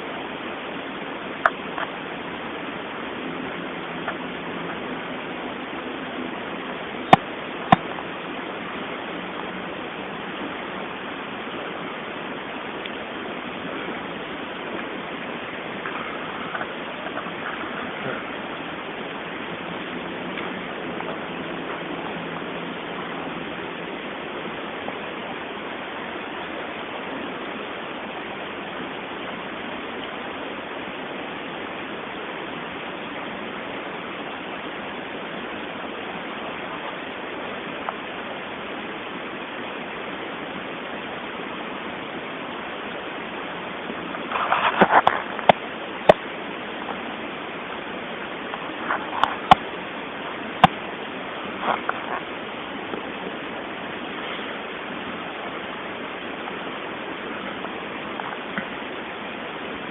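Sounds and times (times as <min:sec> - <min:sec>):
steady background hiss: 0:00.0 - 0:59.9
short scraping noises: 0:44.2 - 0:45.5.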